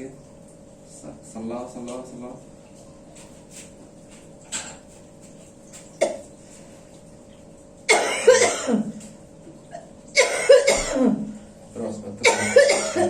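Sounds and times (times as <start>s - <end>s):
person coughing: 6.0s - 6.3s, 7.9s - 9.0s, 9.8s - 11.4s, 12.2s - 13.0s.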